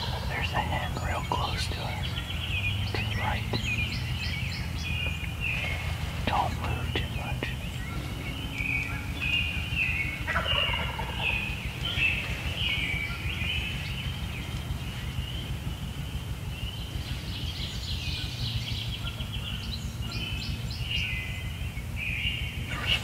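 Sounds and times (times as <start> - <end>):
turkey rattling call: 4.9 - 13.2
turkey gobbling: 10.2 - 12.5.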